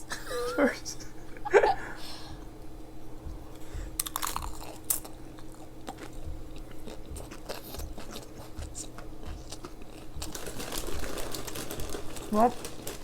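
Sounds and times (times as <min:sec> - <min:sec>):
wet chewing: 0:03.5 - 0:13.0
crisp crunching: 0:06.8 - 0:13.0.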